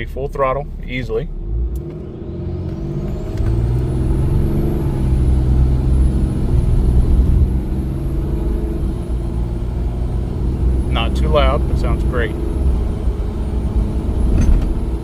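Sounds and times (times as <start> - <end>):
diesel engine under full throttle: 0.0 - 15.0.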